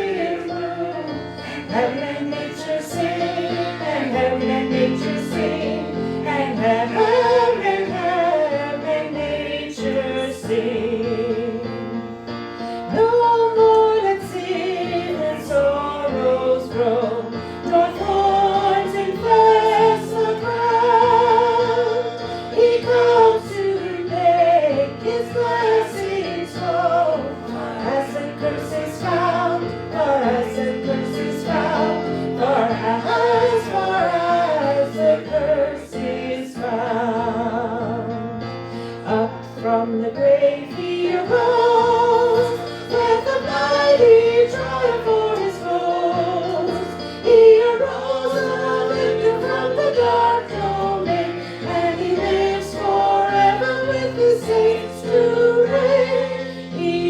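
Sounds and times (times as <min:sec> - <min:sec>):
instrumental accompaniment: 0:00.0 - 0:57.0
voices singing a hymn: 0:00.0 - 0:57.0.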